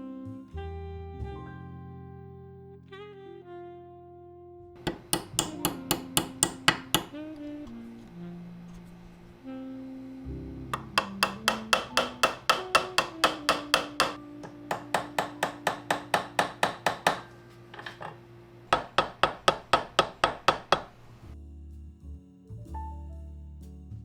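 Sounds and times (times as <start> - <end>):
background music: 4.8 - 7.8, 10.3 - 17.2, 21.4 - 24.0
small hammer tapping metal pins: 4.9 - 7.2, 10.8 - 18.1.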